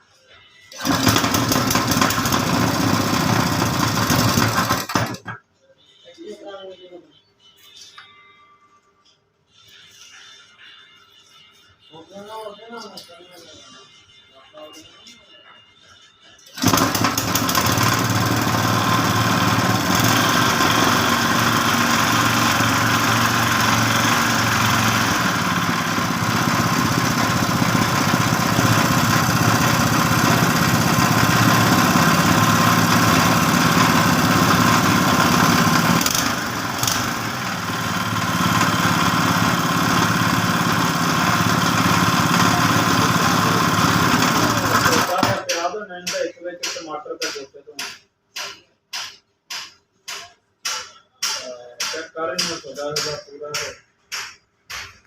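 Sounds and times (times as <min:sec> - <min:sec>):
generator engine running: 0:00.7 - 0:05.4, 0:16.5 - 0:45.6.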